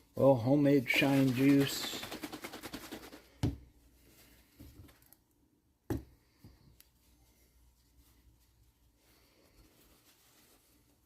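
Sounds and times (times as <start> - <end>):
faint clicks and rustles: 6.4 - 11.0.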